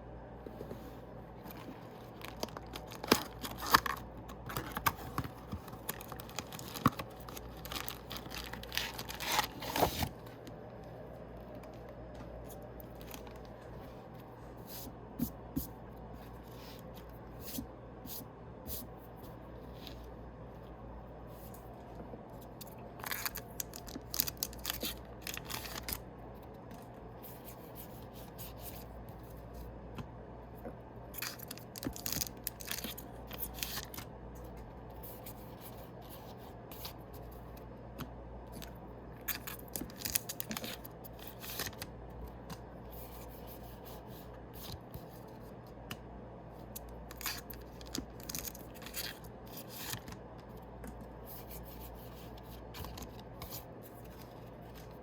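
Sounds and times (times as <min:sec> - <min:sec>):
foil packs crinkling and rustling: 0:01.5 - 0:10.2, 0:23.0 - 0:26.0, 0:31.2 - 0:34.0, 0:39.3 - 0:41.8.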